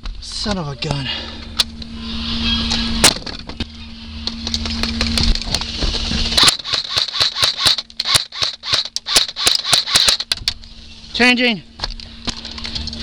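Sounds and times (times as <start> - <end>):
low steady hum: 0.0 - 13.0
airsoft gun shots: 6.4 - 10.3.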